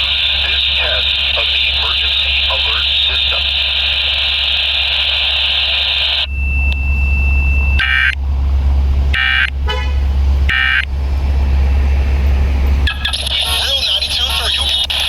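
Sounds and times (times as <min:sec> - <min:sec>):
steady high tone: 0:00.0 - 0:08.4
low steady hum: 0:00.0 - 0:15.0.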